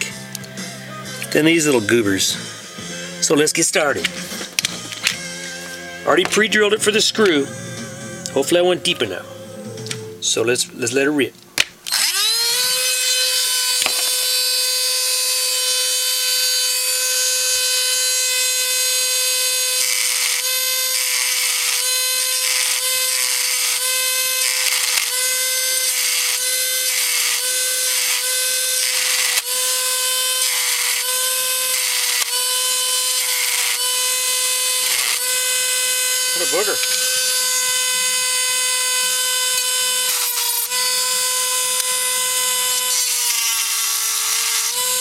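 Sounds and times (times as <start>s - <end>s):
rotary tool drilling metal: 11.9s - 45.0s.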